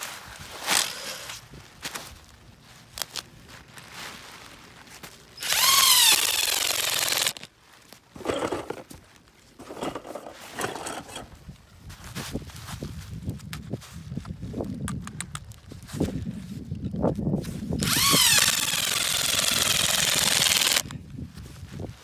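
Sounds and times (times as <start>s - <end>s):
power drill whine: 0.8s - 1.3s, 5.4s - 7.5s, 17.8s - 20.9s
quiet scraping: 9.6s - 11.4s.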